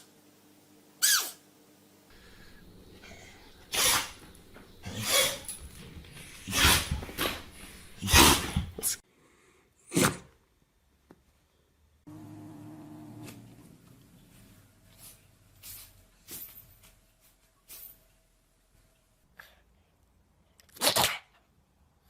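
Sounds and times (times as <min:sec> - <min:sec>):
pet sneezing: 0:03.0 - 0:09.0, 0:20.7 - 0:21.4.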